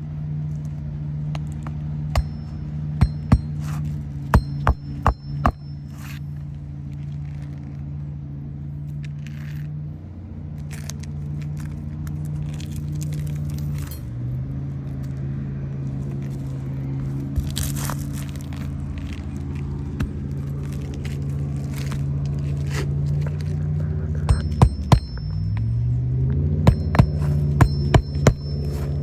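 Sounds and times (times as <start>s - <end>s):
engine humming: 0.0s - 29.0s
tools scraping and clinking: 1.6s - 7.6s, 12.3s - 14.3s, 20.5s - 29.0s
sharp knocks: 2.2s - 5.8s, 24.3s - 25.8s, 26.6s - 29.0s.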